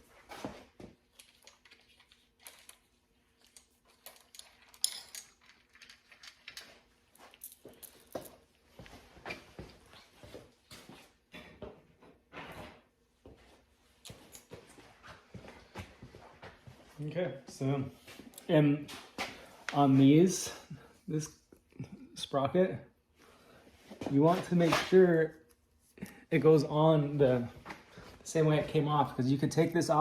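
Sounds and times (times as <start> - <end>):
metal tools clinking and knocking: 3.5 - 8.1.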